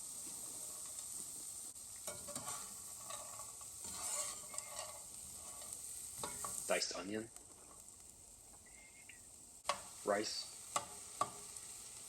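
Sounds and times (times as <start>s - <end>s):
vegetables sizzling in a frying pan: 0.0s - 12.0s
spatula scraping a pan: 0.1s - 6.8s, 10.6s - 12.0s.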